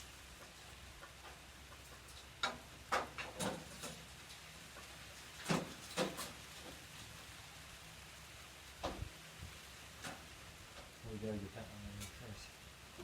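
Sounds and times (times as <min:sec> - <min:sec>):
clicks and knocks of metal parts: 0:01.0 - 0:06.7.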